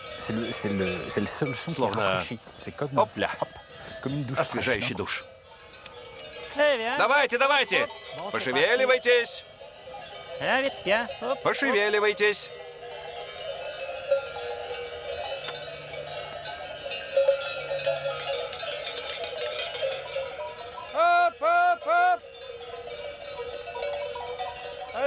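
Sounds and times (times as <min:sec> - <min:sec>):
cowbells clanging: 0:00.0 - 0:25.0.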